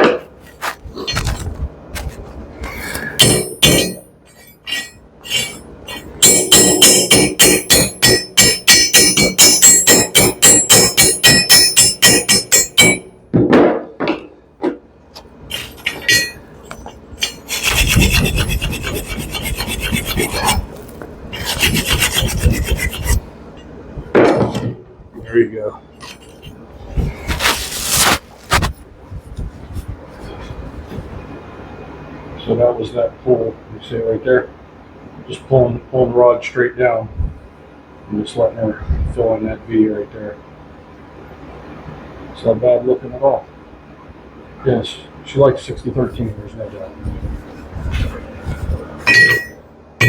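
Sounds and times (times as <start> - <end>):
wire brush scrubbing steel: 3.2 - 13.0, 15.5 - 23.3, 26.0 - 28.8.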